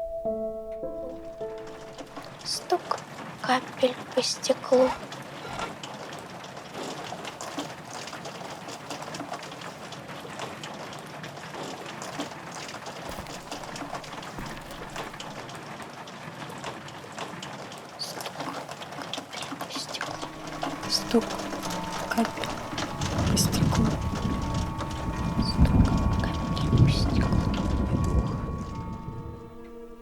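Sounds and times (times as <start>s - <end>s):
rain pattering on window glass: 1.2s - 30.0s.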